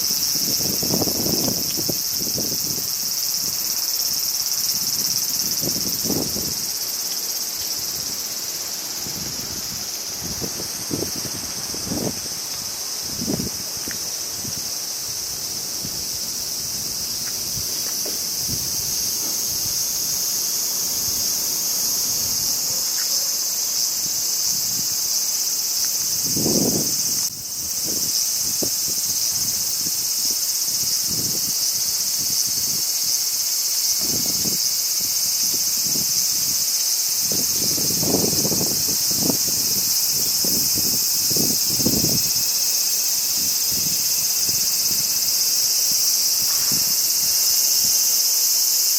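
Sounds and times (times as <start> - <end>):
crickets chirring: 0.0 - 48.9
wind buffeting microphone: 4.7 - 6.9, 8.9 - 22.6, 26.1 - 30.1, 37.3 - 42.4.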